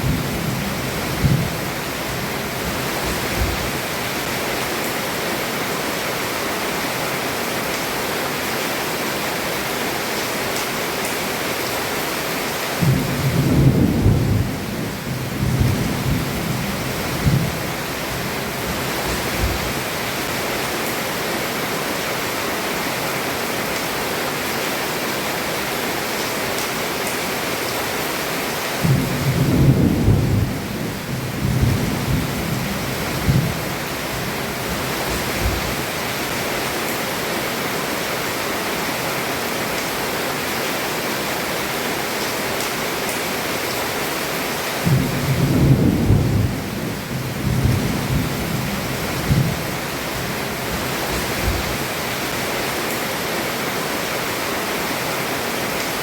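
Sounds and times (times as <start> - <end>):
thunder rumbling: 0.0 - 3.8, 12.8 - 19.8, 28.8 - 35.9, 44.8 - 51.8
heavy rain on a roof: 0.0 - 56.0.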